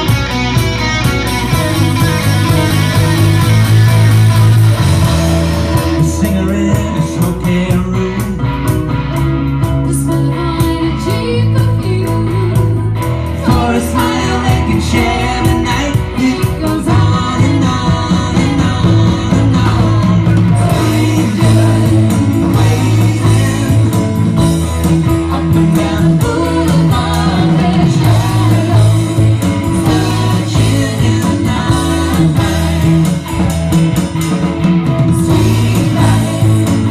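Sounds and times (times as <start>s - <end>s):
guitar rock music with singing: 0.0s - 36.9s.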